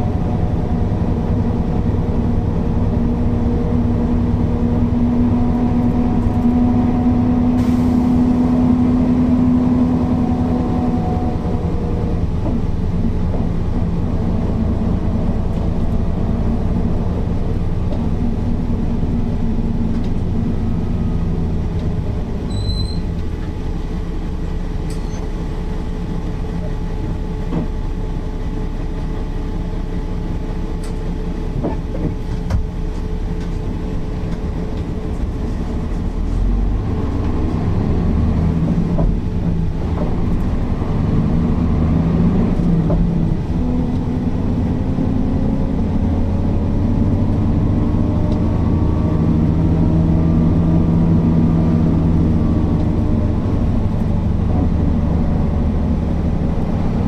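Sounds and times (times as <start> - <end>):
diesel bus engine running: 0.0 - 57.0.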